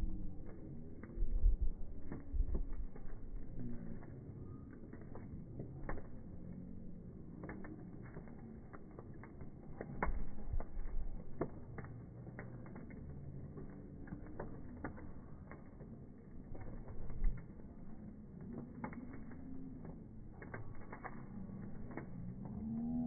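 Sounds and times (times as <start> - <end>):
bonfire wood crackling: 0.0 - 23.0
low rumble: 0.0 - 23.0.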